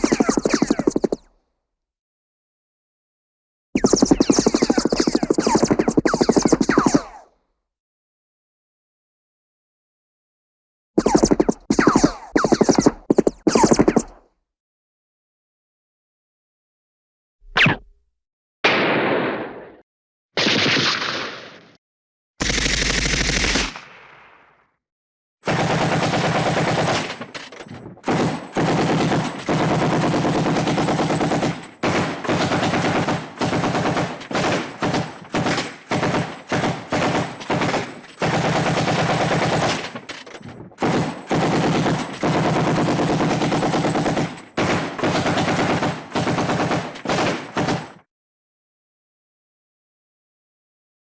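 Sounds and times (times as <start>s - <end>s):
machine-gun bursts: 22.4s - 23.8s, 25.5s - 27.3s, 28.1s - 40.0s, 40.8s - 48.0s.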